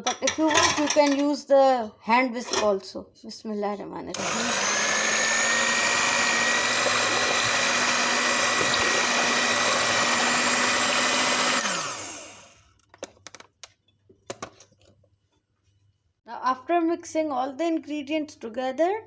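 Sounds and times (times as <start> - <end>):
electric hand beater whining: 4.1 - 12.6.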